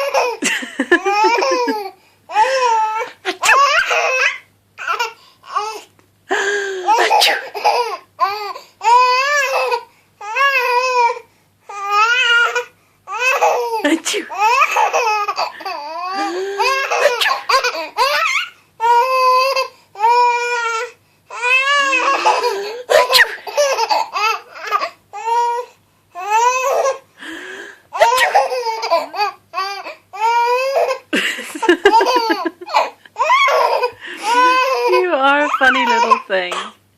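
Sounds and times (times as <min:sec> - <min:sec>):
baby laughing: 0:00.0 - 0:05.7, 0:06.9 - 0:08.5, 0:13.2 - 0:19.7, 0:21.5 - 0:24.9, 0:28.0 - 0:36.2.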